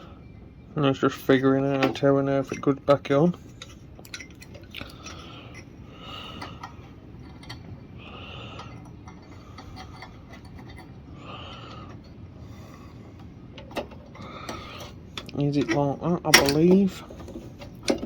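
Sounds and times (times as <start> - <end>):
metal parts scraping: 1.2 - 7.7
metal parts clicking: 1.3 - 5.7, 13.6 - 18.0.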